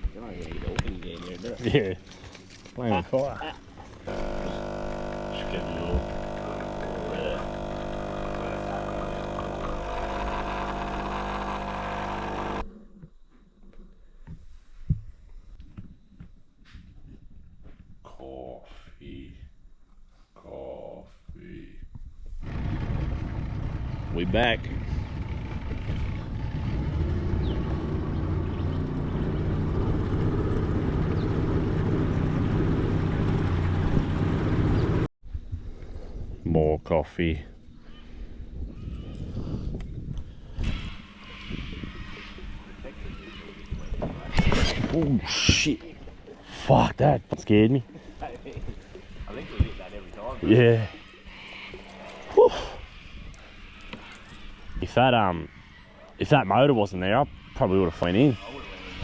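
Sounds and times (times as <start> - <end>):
motor drone: 3.8 - 12.7, 22.4 - 35.1, 38.2 - 45.0, 57.0 - 59.0.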